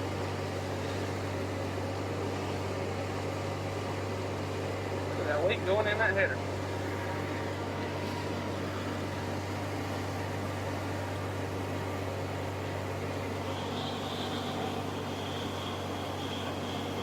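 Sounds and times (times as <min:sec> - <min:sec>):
combine harvester engine drone: 0:00.0 - 0:17.0
faint high whine: 0:12.5 - 0:17.0.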